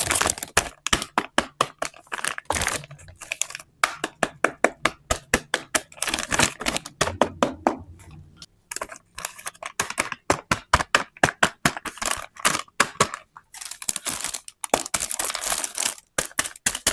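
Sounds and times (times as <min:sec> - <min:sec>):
packaging rustling: 0:00.0 - 0:01.0, 0:01.7 - 0:03.7, 0:13.5 - 0:16.9
plastic toy pieces clicking: 0:11.2 - 0:16.9.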